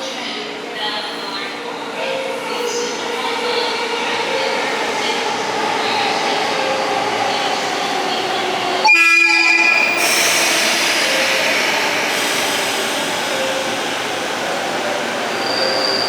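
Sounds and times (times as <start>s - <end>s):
electric train horn: 8.8s - 10.2s.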